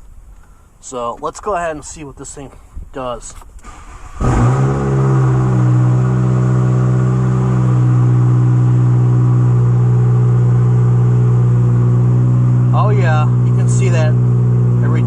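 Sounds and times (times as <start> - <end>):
car engine starting and idling: 3.6 - 15.0.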